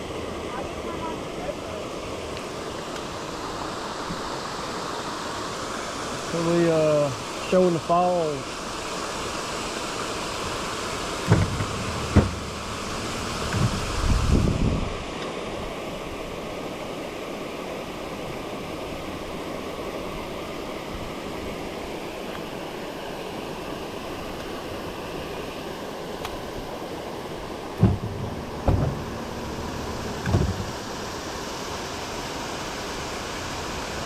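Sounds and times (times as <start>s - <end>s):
water pouring over falls: 0.0s - 14.6s, 15.6s - 34.0s
brief thumps: 27.8s - 29.3s.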